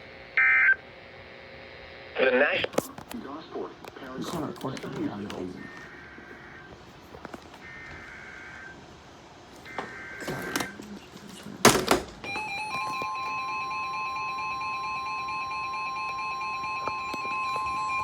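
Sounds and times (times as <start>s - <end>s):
steady electronic alarm tone: 9.6s - 10.8s, 12.2s - 18.0s.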